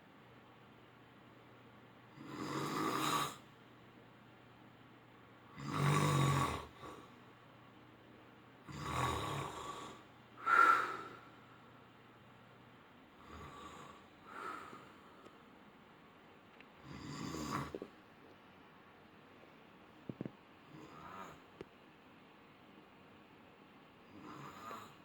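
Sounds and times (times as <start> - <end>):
man snoring: 2.1 - 3.5, 5.5 - 7.1, 8.7 - 11.2, 13.2 - 14.7, 16.8 - 17.9, 20.7 - 21.4, 24.1 - 25.0.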